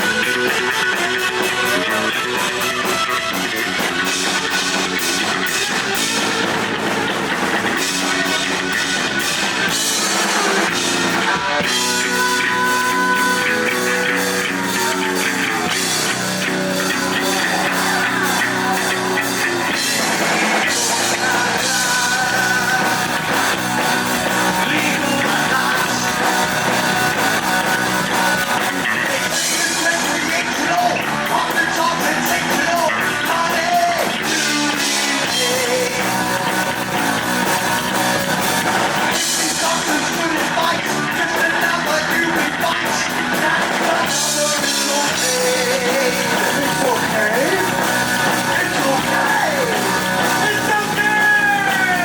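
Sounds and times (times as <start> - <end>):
drum kit: 0.0 - 52.0
heavy metal band playing: 0.0 - 52.0
person singing: 0.0 - 52.0.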